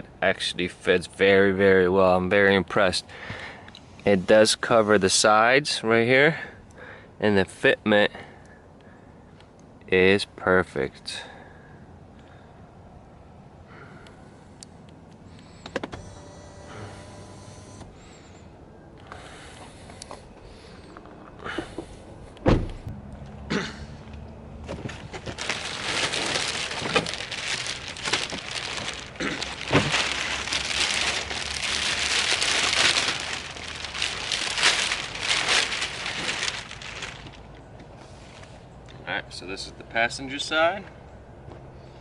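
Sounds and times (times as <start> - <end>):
heavy thump: 22.4 - 23.0
floor mats crackling and rustling: 24.6 - 38.6.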